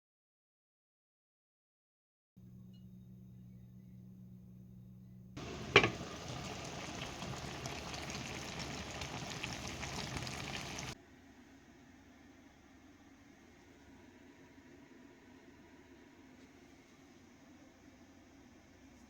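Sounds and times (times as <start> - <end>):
faint hum: 2.4 - 19.0
food bubbling and hissing: 5.4 - 11.0.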